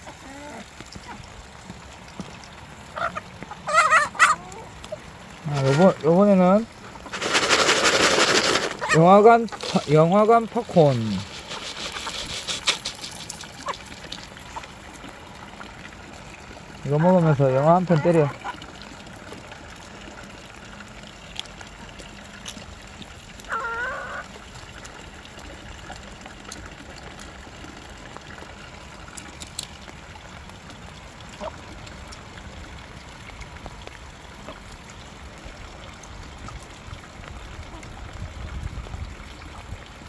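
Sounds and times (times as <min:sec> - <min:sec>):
chicken call: 0:03.0 - 0:04.7, 0:23.5 - 0:24.2.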